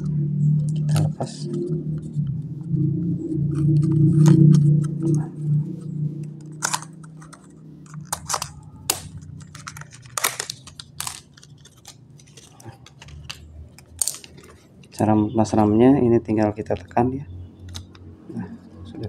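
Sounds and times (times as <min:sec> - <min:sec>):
hands clicking plastic parts: 0:06.3 - 0:15.1.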